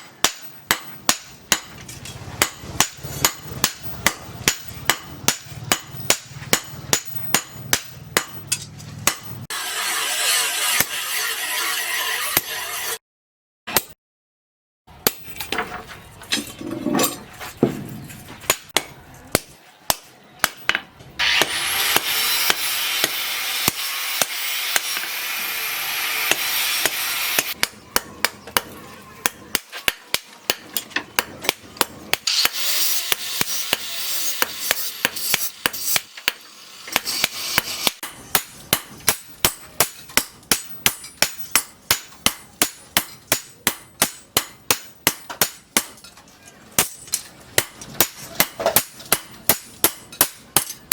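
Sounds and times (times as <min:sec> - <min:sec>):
hammer on metal: 0:00.0 - 0:09.5, 0:25.8 - 0:46.1, 0:46.8 - 0:50.9.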